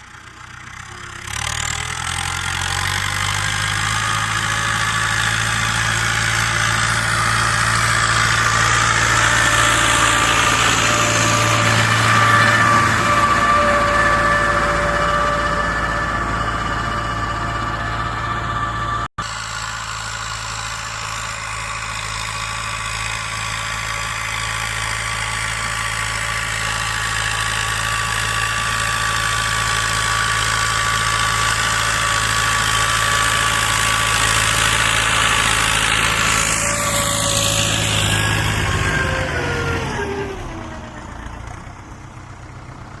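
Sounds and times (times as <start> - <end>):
tractor diesel engine running: 0.0 - 43.0.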